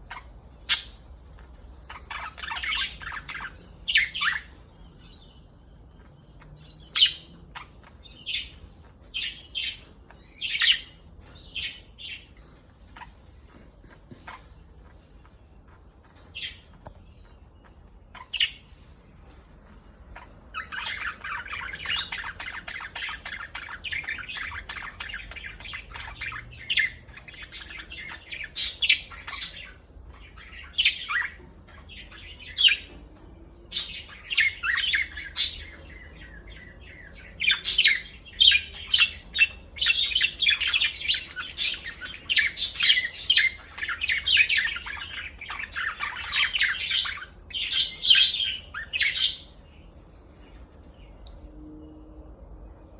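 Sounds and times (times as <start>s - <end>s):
budgerigars chattering: 0.0s - 1.1s, 1.7s - 4.6s, 20.6s - 33.0s, 33.7s - 49.6s
sharp bird chirps and squawks: 0.0s - 13.5s, 18.1s - 18.8s, 20.2s - 33.0s, 33.7s - 49.7s.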